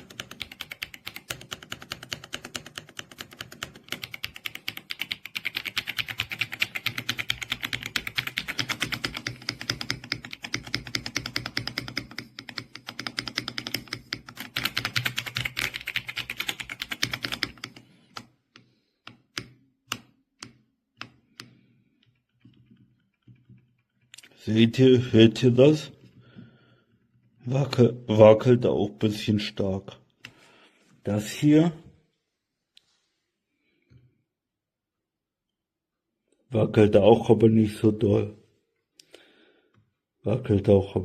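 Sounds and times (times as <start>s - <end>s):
mechanical keyboard typing: 0.0s - 18.3s.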